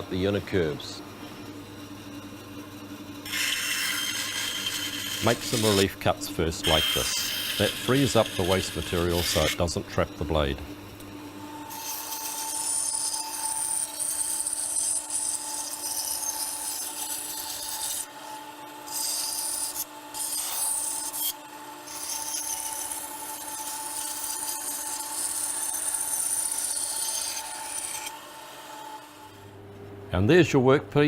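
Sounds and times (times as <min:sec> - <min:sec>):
bandsaw motor hum: 0:00.0 - 0:29.8.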